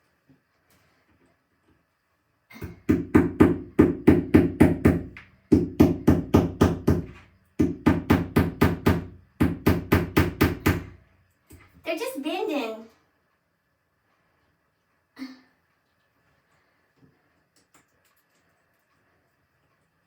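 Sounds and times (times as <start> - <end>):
hammer knocking wall anchors: 2.5 - 11.0.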